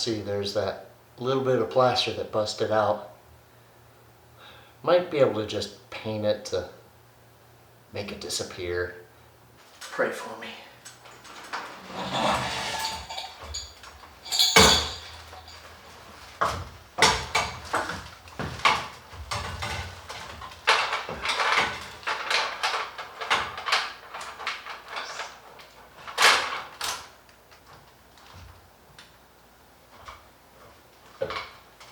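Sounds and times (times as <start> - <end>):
metallic clinks and scraping: 11.2 - 16.3
loud metal clank: 11.8 - 15.6.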